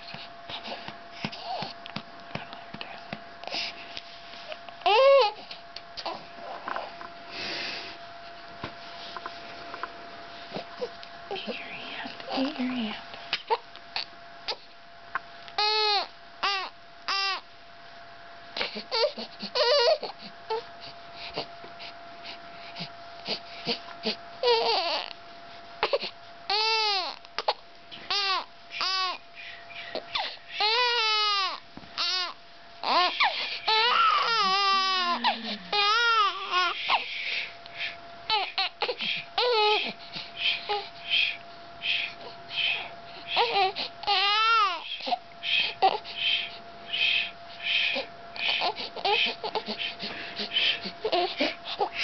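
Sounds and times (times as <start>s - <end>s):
faint high-pitched hum: 0.0s - 52.0s
baby crying: 1.4s - 1.7s, 4.8s - 6.2s, 15.6s - 17.4s, 18.7s - 20.6s, 23.7s - 25.1s, 25.8s - 29.2s, 30.0s - 37.0s, 38.3s - 40.0s, 40.7s - 40.9s, 43.3s - 46.0s, 47.7s - 52.0s.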